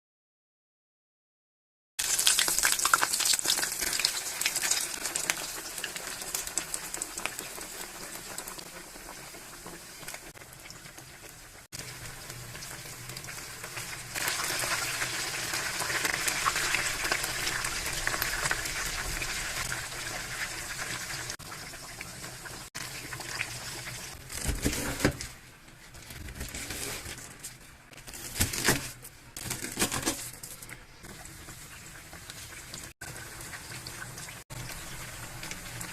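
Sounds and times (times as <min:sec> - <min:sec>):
food sizzling in a frying pan: 0:02.0 - 0:24.2, 0:31.0 - 0:35.9.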